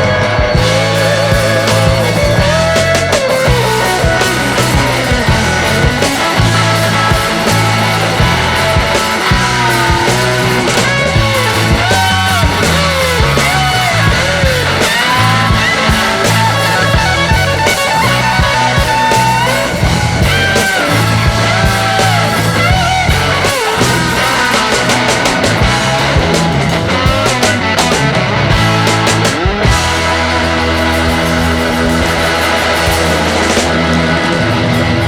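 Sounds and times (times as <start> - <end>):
rock music with electric guitar: 0.0 - 35.0
steady bass line: 0.0 - 35.0.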